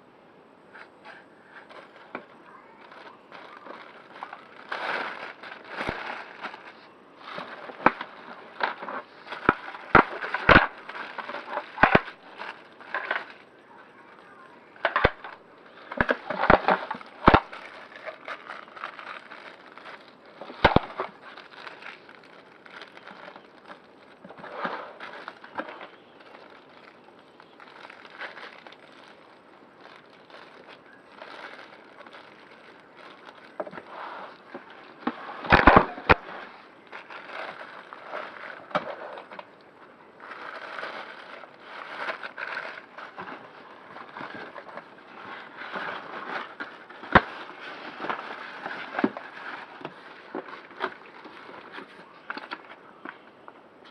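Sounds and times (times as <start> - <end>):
packaging crackling and rustling: 0.6 - 53.9.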